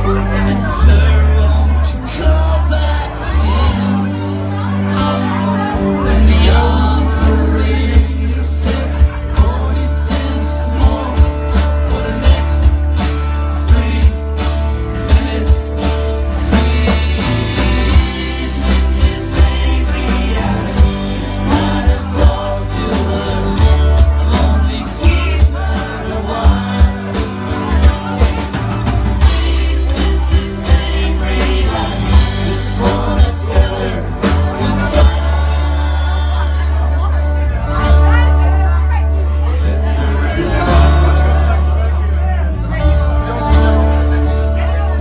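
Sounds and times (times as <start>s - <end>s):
guitar: 0.0s - 45.0s
heavy bass line: 0.0s - 45.0s
live band playing: 0.0s - 45.0s
drum beat: 15.1s - 35.6s.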